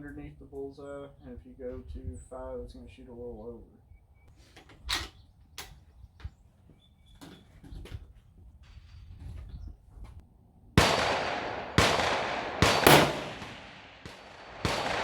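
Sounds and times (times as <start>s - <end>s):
rifle shots echoing: 10.8s - 15.0s.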